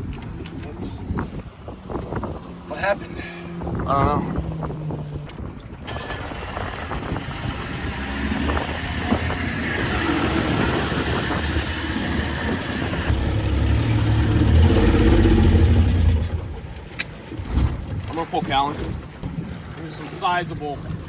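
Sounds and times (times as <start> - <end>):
boat engine running: 0.0 - 21.0.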